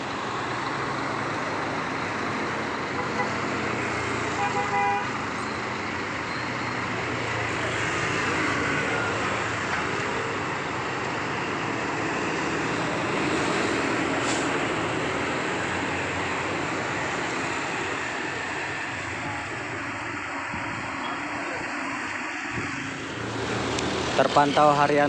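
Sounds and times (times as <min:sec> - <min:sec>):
heavy vehicle engines: 0:00.0 - 0:25.0
road traffic noise: 0:00.0 - 0:25.0.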